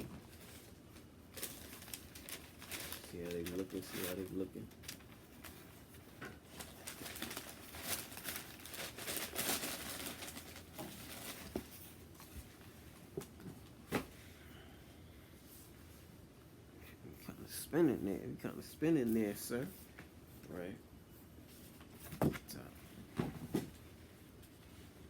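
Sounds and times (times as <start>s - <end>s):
paper and cardboard rustling: 0.0s - 12.7s.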